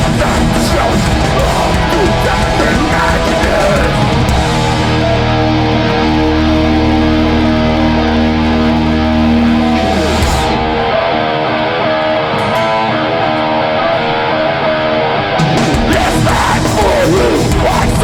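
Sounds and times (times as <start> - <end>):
bass: 0.0 - 11.0, 15.6 - 18.0
distorted electric guitars: 0.0 - 18.0.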